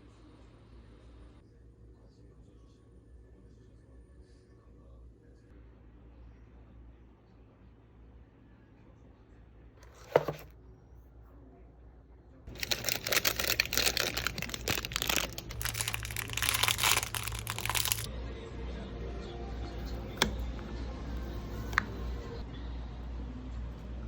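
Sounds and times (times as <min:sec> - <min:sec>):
crinkling and rustling: 0:09.8 - 0:10.5, 0:12.5 - 0:18.1.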